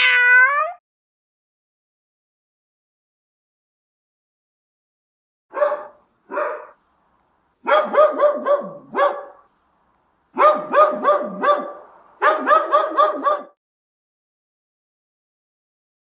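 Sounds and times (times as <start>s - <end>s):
dog barking: 5.5s - 6.8s, 7.6s - 9.5s, 10.4s - 13.6s.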